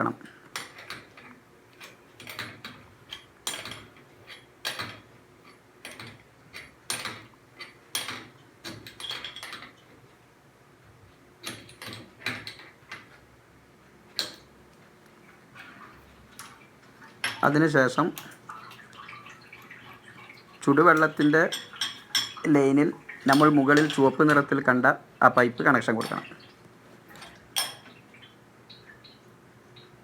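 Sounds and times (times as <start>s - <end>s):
metallic clicks of pipe fittings: 0.5s - 9.8s.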